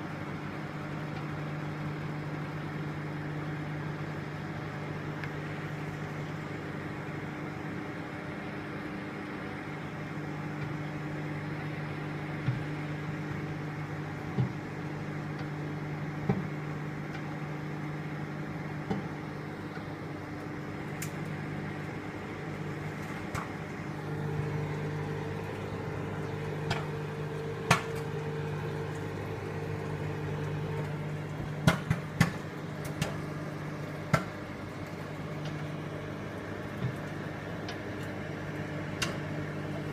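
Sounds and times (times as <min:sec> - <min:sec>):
microwave oven humming: 0:00.0 - 0:39.9
popcorn popping: 0:18.6 - 0:39.9.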